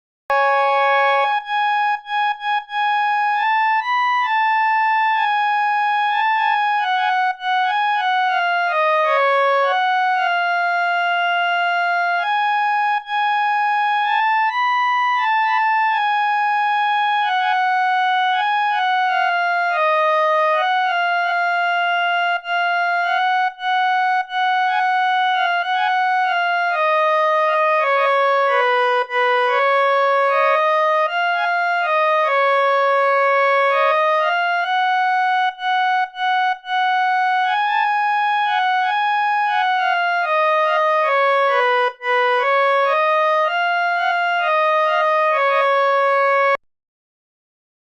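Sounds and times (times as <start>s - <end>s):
slow synthesizer melody: 0.3s - 2.6s.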